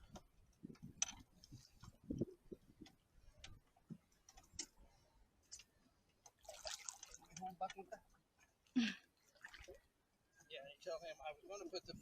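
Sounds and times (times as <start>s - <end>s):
faint clicks and soft knocks: 0.0s - 6.4s.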